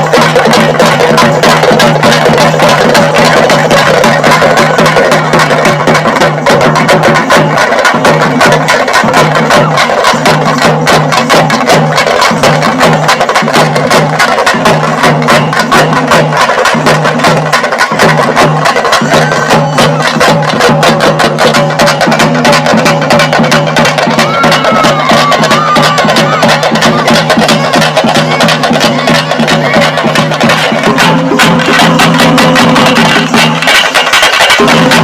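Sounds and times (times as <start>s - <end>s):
low drum beat: 0.0s - 33.6s
rapid sharp percussion strokes: 0.0s - 35.0s.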